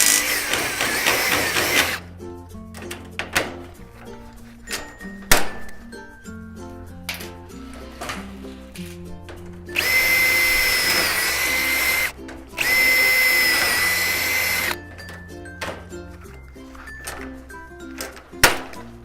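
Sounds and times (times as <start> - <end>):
power drill whining: 0.0 - 2.0, 9.8 - 14.8
background music: 0.0 - 19.0.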